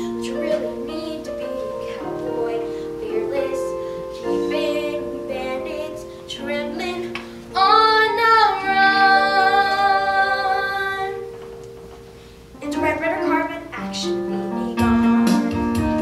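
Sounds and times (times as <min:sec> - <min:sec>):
child singing: 0:00.0 - 0:11.3
instrumental accompaniment: 0:00.0 - 0:16.0.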